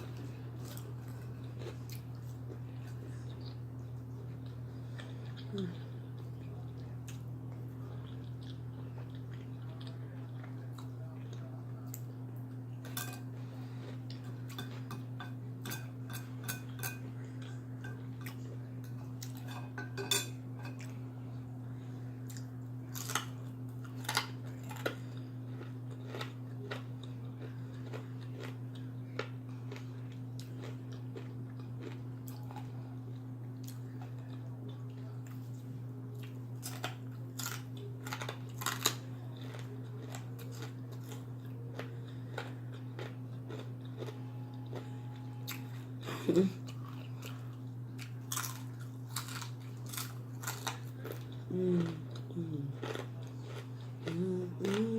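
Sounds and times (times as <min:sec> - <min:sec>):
chewing and crunching food: 0:00.0 - 0:54.9
low hum: 0:00.0 - 0:54.9
cutlery clinking on a plate: 0:19.2 - 0:20.9.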